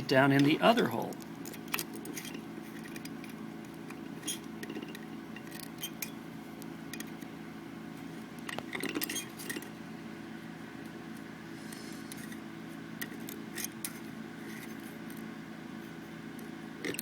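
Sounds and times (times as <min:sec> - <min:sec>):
clicks and scrapes of wire: 0:01.2 - 0:06.2.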